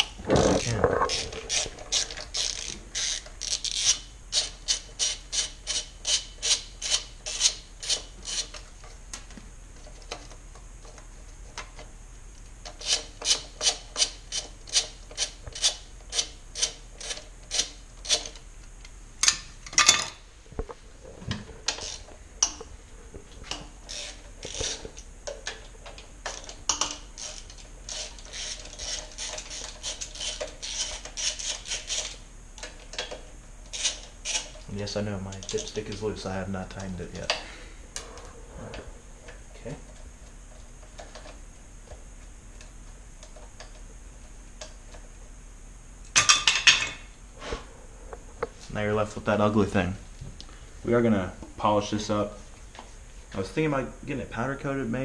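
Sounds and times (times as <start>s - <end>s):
socket ratchet clicking: 1.1s - 8.6s, 26.3s - 33.1s.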